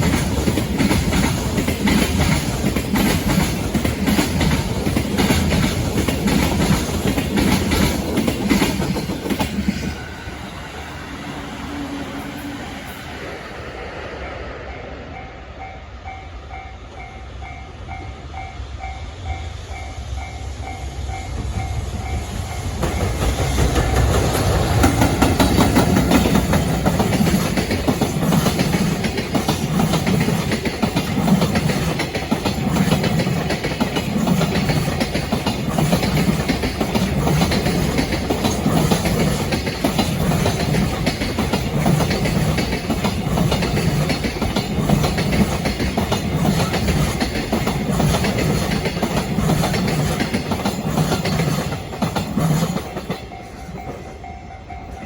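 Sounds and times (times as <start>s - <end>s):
wheels clicking over rail joints: 0.0s - 9.9s, 22.8s - 54.2s
freight train passing: 0.0s - 55.0s.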